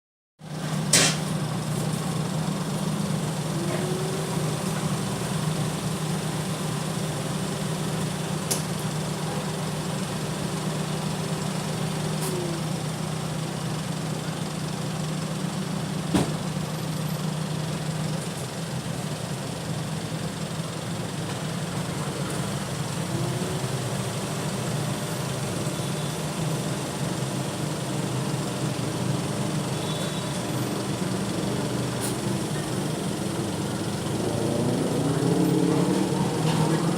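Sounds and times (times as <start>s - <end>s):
low mechanical drone: 30.8s - 36.9s
rising and falling tone: 34.0s - 36.9s.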